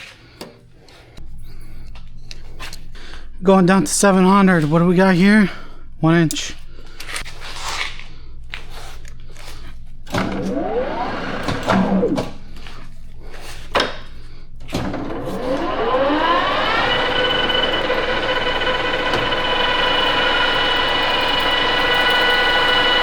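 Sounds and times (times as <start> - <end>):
lathe motor whine: 8.4 - 23.0.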